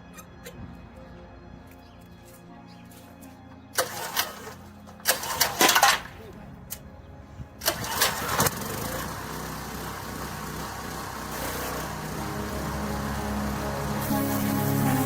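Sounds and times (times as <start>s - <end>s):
small petrol engine running: 3.8s - 6.3s, 7.6s - 15.0s.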